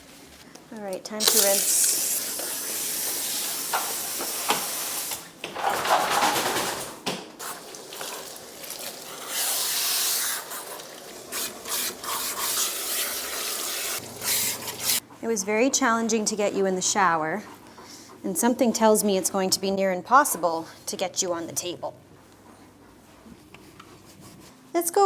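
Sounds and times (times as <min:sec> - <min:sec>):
shower sprayer spraying water: 0:01.2 - 0:05.4, 0:07.4 - 0:15.0.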